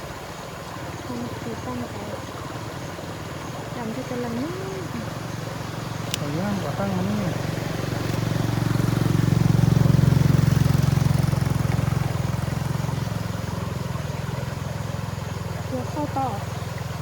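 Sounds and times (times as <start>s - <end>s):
small engine passing by: 0.0s - 17.0s.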